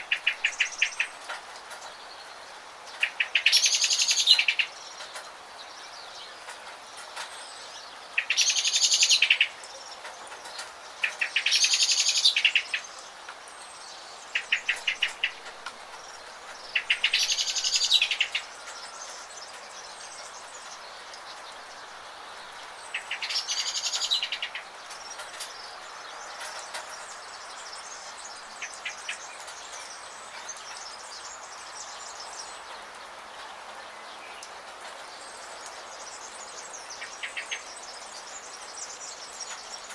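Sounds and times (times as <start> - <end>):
songbird trilling: 0.0 - 1.2, 3.0 - 4.8, 8.2 - 9.7, 14.3 - 15.6, 16.2 - 20.8, 22.9 - 25.7
rain hiss: 0.0 - 39.9.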